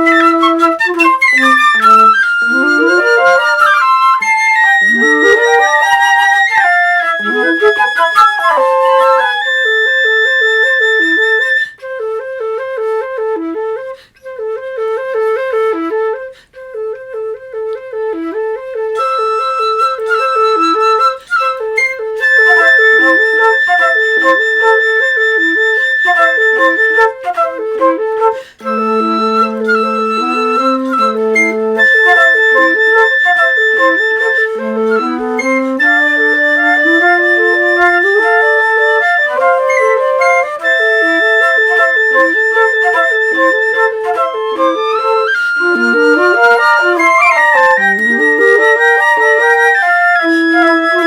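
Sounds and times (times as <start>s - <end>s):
flutes playing: 0.0s - 51.0s.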